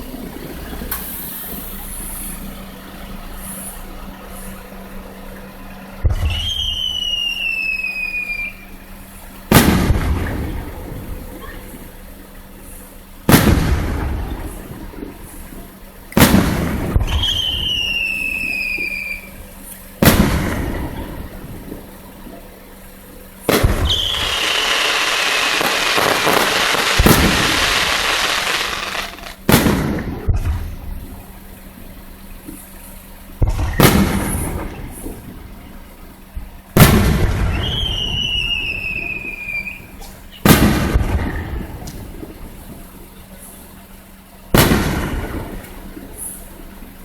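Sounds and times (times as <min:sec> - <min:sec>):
falling firework whistle: 0:06.1 - 0:08.8, 0:16.3 - 0:19.5, 0:23.5 - 0:30.0, 0:36.8 - 0:40.8
crackling shower of sparks: 0:06.1 - 0:35.8
firework shell bursts: 0:23.4 - 0:31.0, 0:33.4 - 0:35.2.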